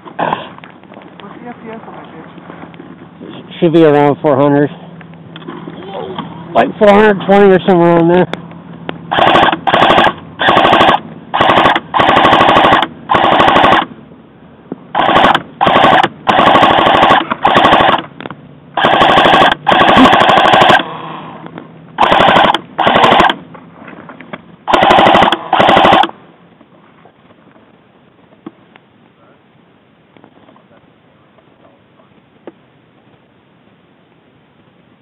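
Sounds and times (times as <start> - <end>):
airsoft rifle firing bursts: 9.1 - 13.9, 14.9 - 18.1, 18.8 - 20.9, 22.0 - 23.4, 24.7 - 26.1.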